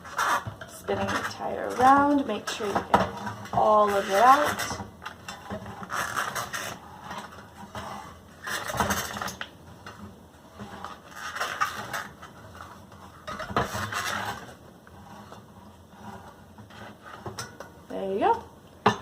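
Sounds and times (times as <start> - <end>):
rubber tube rubbing against rim: 3.2 - 9.8, 10.5 - 17.4.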